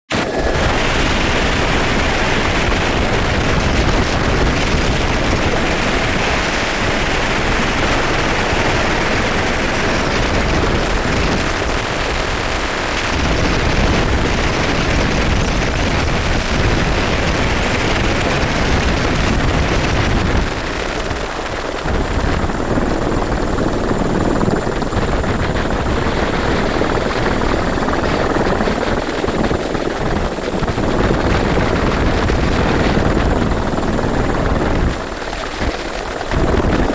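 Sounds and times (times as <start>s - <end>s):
high-pitched whine: 0.1s - 28.4s
helicopter rotor and engine noise: 0.1s - 36.9s.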